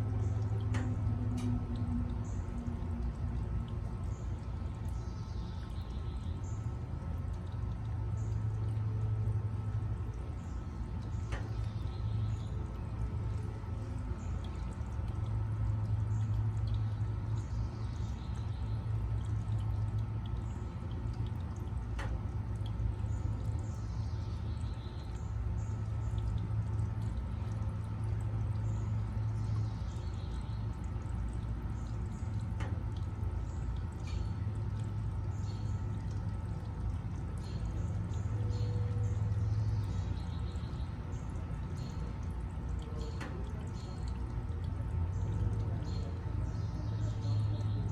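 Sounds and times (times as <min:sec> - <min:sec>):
low hum: 0:00.0 - 0:47.9
water trickling over waterfall: 0:00.0 - 0:47.9.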